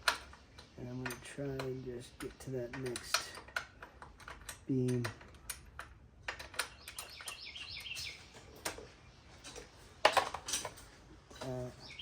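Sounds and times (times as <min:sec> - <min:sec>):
bird chirping: 0:00.0 - 0:03.4, 0:06.4 - 0:09.9, 0:11.4 - 0:12.0
hand tool clicking on metal bolt: 0:00.0 - 0:08.8.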